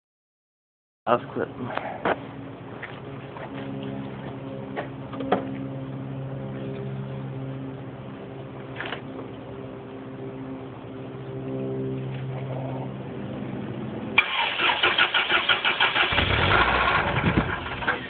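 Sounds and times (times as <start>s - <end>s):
low hum: 1.1s - 14.2s
car engine cranking and chugging: 14.2s - 18.0s.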